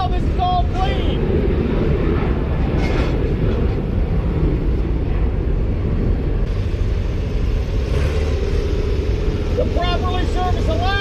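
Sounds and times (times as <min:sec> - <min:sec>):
engine running: 0:00.0 - 0:11.0.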